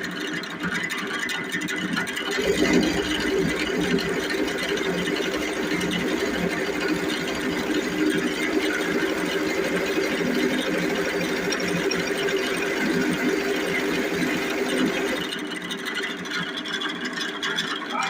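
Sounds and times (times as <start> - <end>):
metal lathe machining whir: 2.0 - 15.5.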